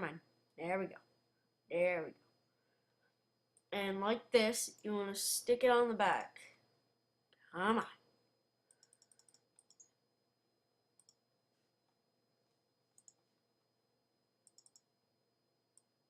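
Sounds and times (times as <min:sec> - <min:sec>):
faint sharp clicking: 0:13.0 - 0:13.2, 0:14.4 - 0:14.9.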